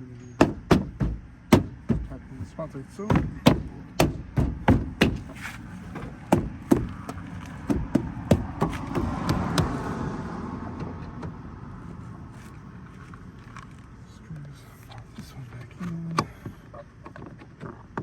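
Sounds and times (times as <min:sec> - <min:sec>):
trim panel knocking against door: 0:00.4 - 0:09.8
soft rustle: 0:05.3 - 0:06.0, 0:11.8 - 0:16.0.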